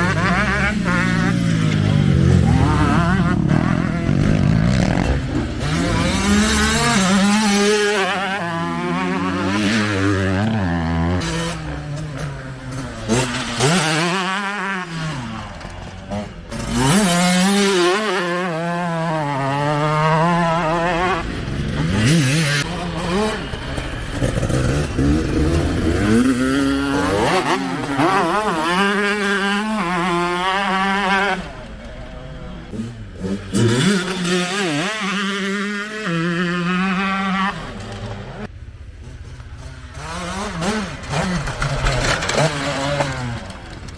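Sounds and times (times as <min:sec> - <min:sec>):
motocross engine revving: 0:00.0 - 0:43.9.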